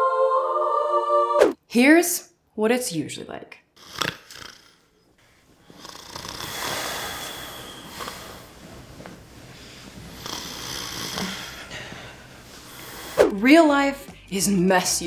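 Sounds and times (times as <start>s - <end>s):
man snoring: 3.8s - 4.9s, 5.7s - 8.6s, 10.1s - 11.9s.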